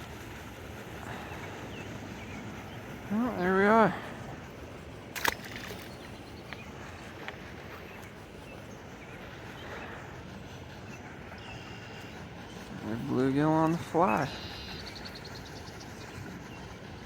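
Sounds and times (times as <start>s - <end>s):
outdoor background noise: 0.0s - 17.0s
sharp click: 5.2s - 5.8s.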